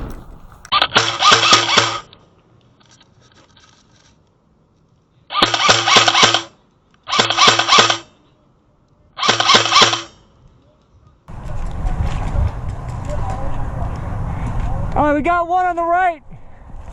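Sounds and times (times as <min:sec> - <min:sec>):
airsoft gun firing in bursts: 0:00.7 - 0:02.1, 0:05.3 - 0:06.5, 0:07.1 - 0:08.1, 0:09.2 - 0:10.2.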